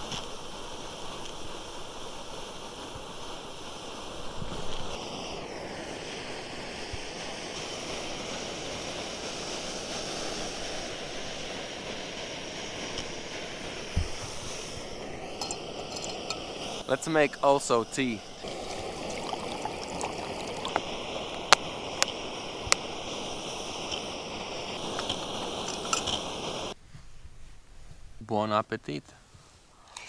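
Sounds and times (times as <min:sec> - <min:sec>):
gas stove burner hissing: 0:00.0 - 0:26.8
low knock: 0:14.0 - 0:14.4.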